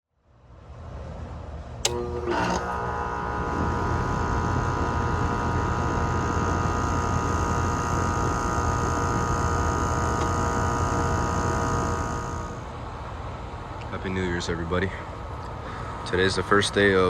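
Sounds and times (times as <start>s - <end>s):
fan noise: 0.4s - 17.0s
air conditioner compressor hum: 1.6s - 17.0s
steady tones: 1.8s - 12.8s.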